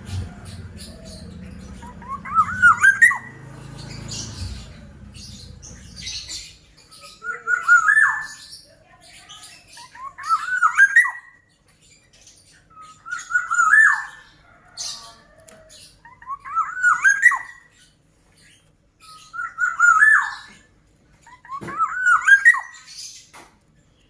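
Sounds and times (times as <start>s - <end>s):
high bird chirps: 0.0s - 23.4s
bird singing fluty whistles: 16.2s - 17.6s, 19.2s - 20.5s.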